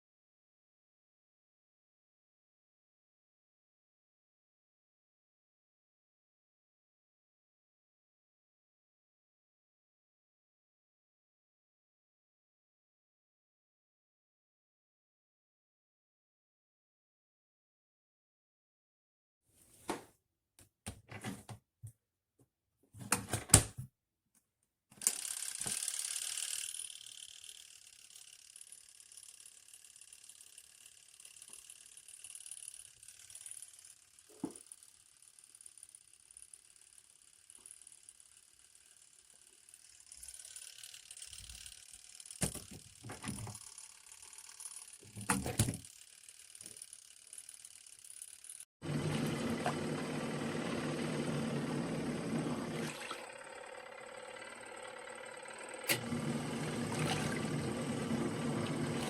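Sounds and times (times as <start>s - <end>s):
washing machine hissing: 48.8s - 59.0s.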